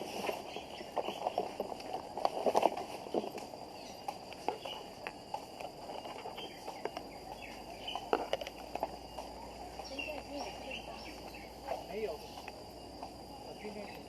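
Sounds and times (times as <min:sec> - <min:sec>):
faint bird chirps: 0:03.7 - 0:05.0, 0:05.9 - 0:08.4, 0:09.0 - 0:12.5.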